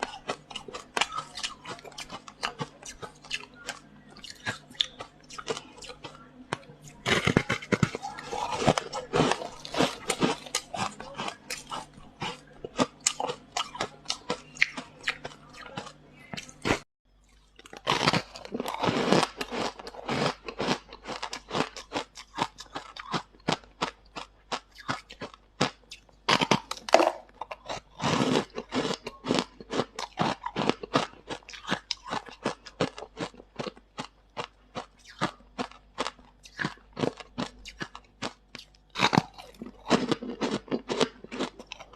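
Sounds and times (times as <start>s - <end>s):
crunching and chewing ice: 0.0s - 41.9s.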